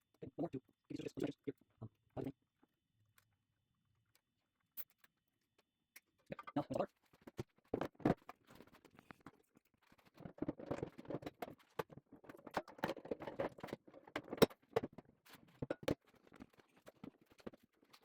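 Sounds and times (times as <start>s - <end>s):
parts and tools being handled: 6.3s - 18.0s.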